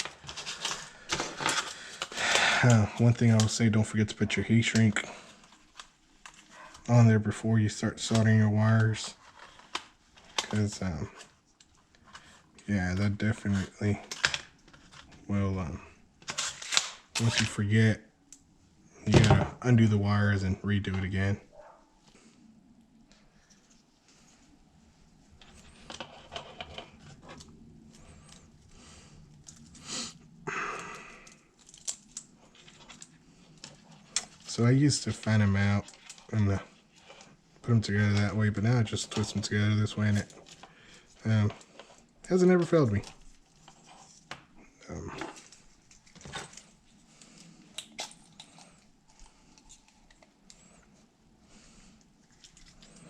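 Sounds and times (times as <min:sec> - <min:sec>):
wires clicking and rustling: 0:00.0 - 0:07.0, 0:07.9 - 0:15.3, 0:22.8 - 0:53.0
wires twisted by hand: 0:31.2 - 0:44.5.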